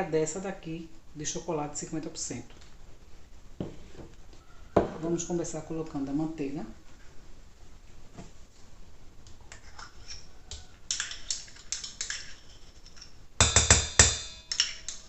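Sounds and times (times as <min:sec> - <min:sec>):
utensil knocking against dish: 0:04.8 - 0:05.1
spoon scraping and tapping bowl: 0:09.5 - 0:15.0.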